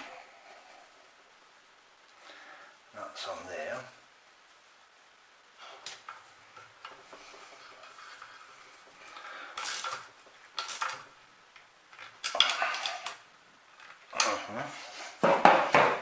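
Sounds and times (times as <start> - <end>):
faint scrape: 7.0 - 10.1.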